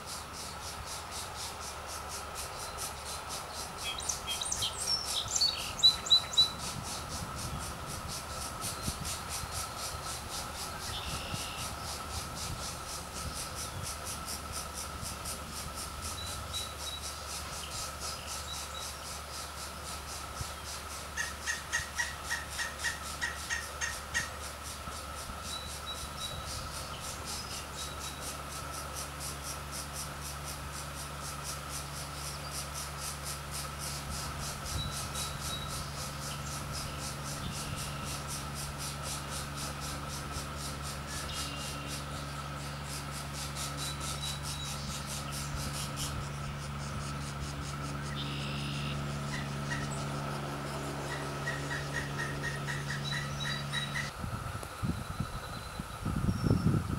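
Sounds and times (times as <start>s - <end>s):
insects chirping: 0.0s - 56.9s
bird notes: 39.4s - 54.1s.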